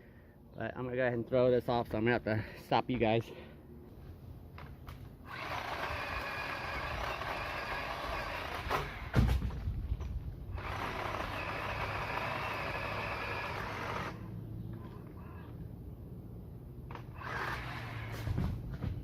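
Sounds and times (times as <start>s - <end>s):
pole saw motor and chain whine: 5.2s - 9.2s, 10.5s - 15.6s, 16.9s - 18.4s.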